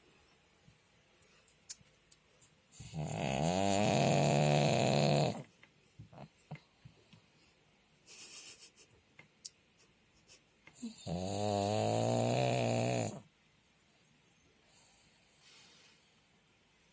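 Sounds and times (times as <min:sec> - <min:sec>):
dog snoring: 0:02.8 - 0:05.5, 0:10.8 - 0:13.2.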